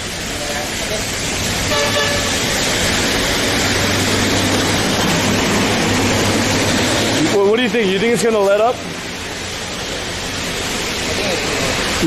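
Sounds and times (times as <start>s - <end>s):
heavy rain hiss: 0.0s - 12.0s.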